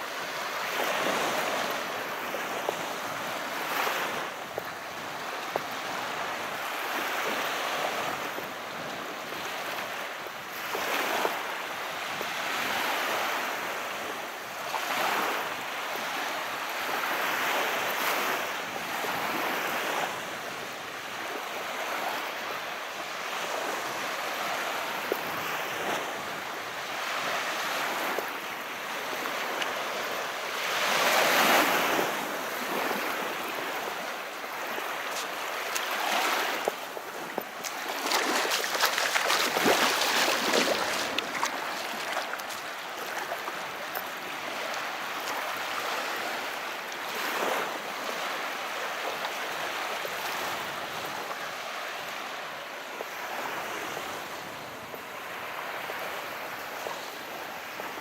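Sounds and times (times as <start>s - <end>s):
waves washing ashore: 0.0s - 58.0s
faint fizzing crackle: 36.6s - 45.4s.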